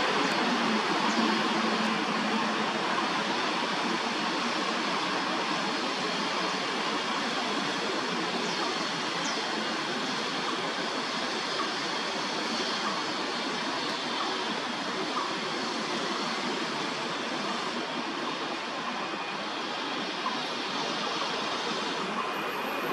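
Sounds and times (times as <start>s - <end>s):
road traffic: 0.0s - 4.3s.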